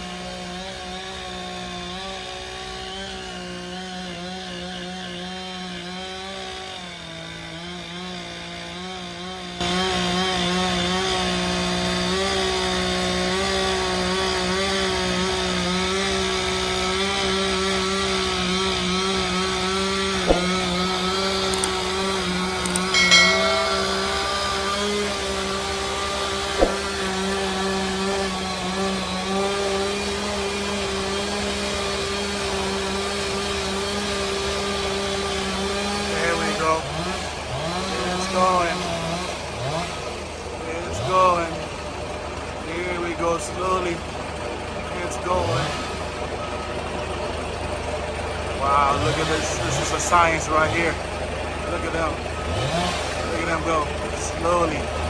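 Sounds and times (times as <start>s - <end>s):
chainsaw cutting wood: 0.0s - 55.0s
short sharp knocks: 26.6s - 26.9s.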